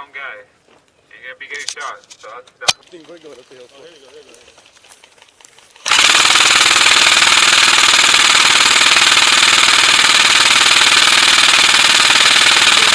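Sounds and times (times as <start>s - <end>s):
airsoft gun full-auto burst: 5.8s - 12.9s.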